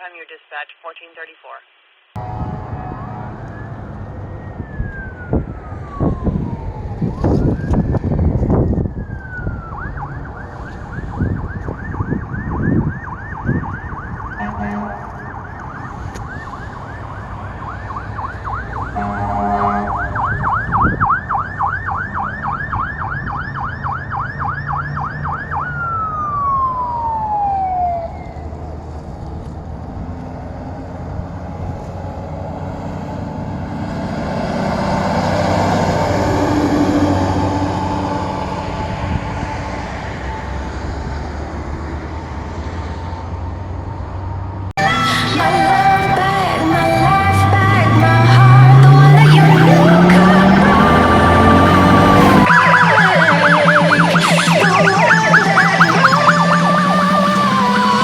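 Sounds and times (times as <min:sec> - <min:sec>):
road noise: 0:01.9 - 0:58.0
truck horn blasts: 0:02.2 - 0:03.5, 0:14.4 - 0:15.1, 0:18.9 - 0:20.2, 0:45.9 - 0:52.4
fire truck siren yelping: 0:02.2 - 0:29.0, 0:33.6 - 0:41.2, 0:44.8 - 0:58.0
truck engine: 0:02.2 - 0:58.0.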